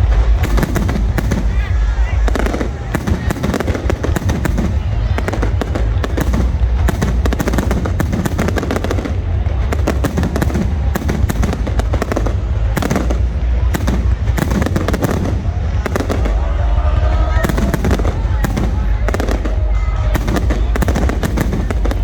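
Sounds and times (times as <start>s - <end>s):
fireworks crackling bangs: 0.0s - 22.0s
steady low rumble: 0.0s - 22.0s.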